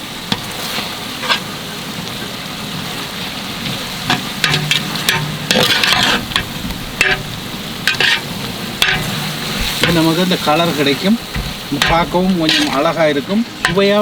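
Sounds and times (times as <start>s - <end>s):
masala sizzling in a pot: 0.0s - 14.0s
ladle scraping a pot: 1.2s - 1.5s, 4.1s - 10.1s, 11.3s - 14.0s.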